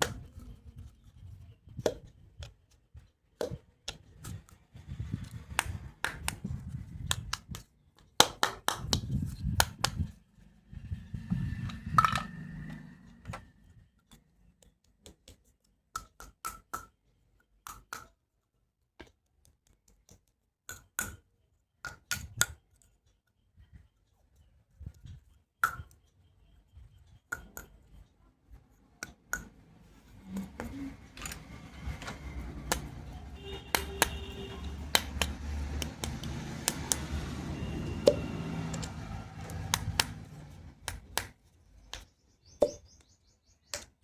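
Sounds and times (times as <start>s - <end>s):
plastic toy pieces clicking: 30.6s - 34.2s, 38.0s - 41.3s.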